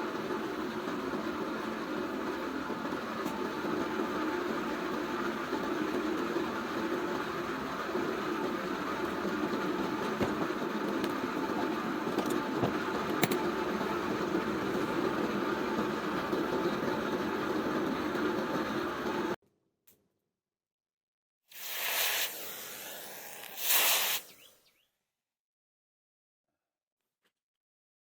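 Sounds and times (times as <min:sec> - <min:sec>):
machine running: 0:00.0 - 0:19.4.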